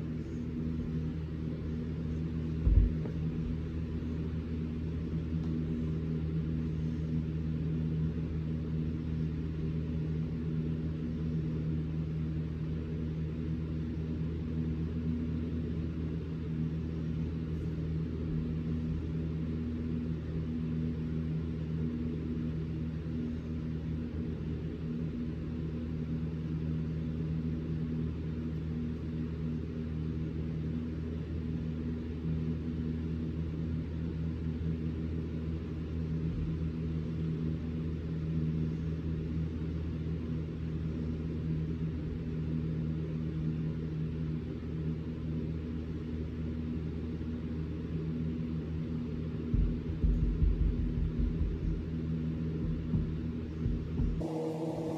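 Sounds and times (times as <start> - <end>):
shop vac droning: 0.0 - 11.4, 49.0 - 54.9
low thumps: 2.6 - 3.5, 52.6 - 54.9.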